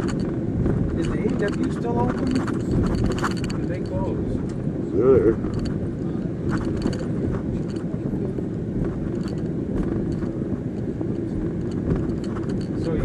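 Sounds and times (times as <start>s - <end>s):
car engine and road noise: 0.0s - 13.0s.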